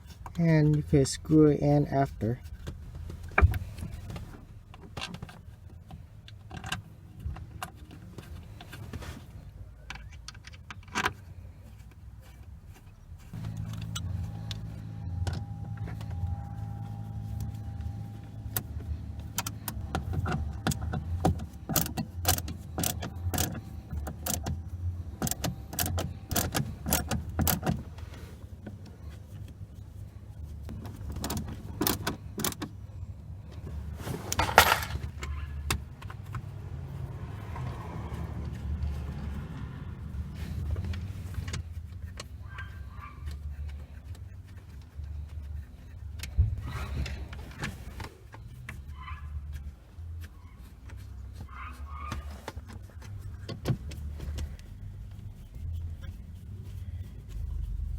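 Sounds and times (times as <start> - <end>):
low hum: 12.9 - 51.3, 52.8 - 57.9.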